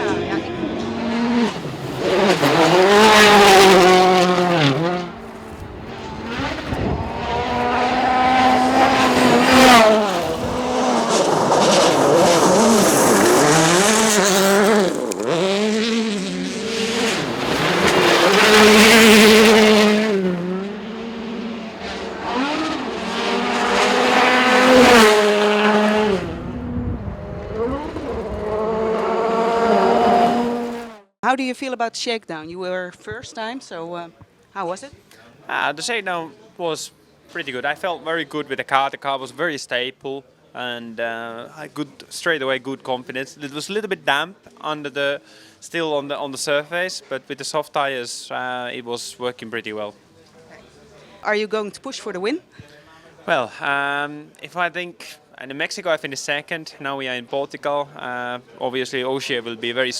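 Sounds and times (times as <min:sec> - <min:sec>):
rally cars passing on gravel: 0:00.1 - 0:31.0.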